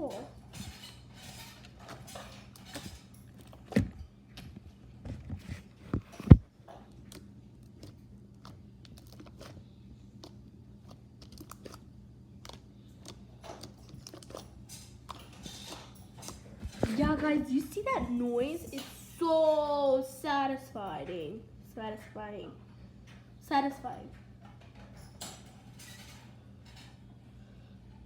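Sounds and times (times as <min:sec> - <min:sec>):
slime squelching: 0:06.8 - 0:18.6.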